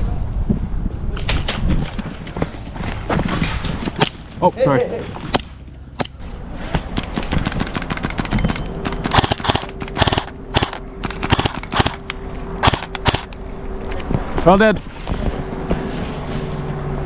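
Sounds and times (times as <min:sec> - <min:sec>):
airsoft guns firing: 0:06.8 - 0:12.0, 0:12.6 - 0:13.4.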